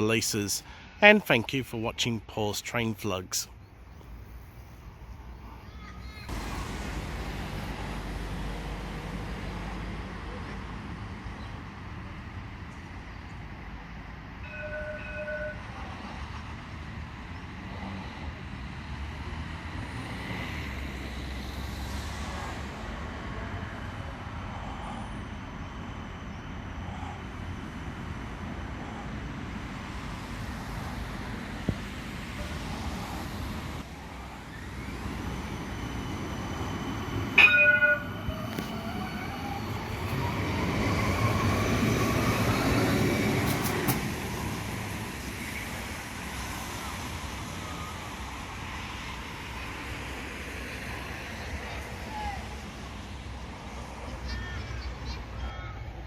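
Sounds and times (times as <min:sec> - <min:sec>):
light rail vehicle rumbling past: 0:04.4 - 0:56.0
brief tone: 0:14.5 - 0:15.7.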